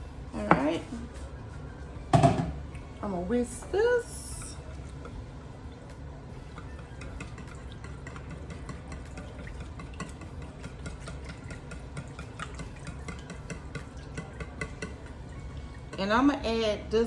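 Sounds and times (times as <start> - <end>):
steady low hum: 0.0 - 17.0
whisk clicking against bowl: 6.4 - 16.1.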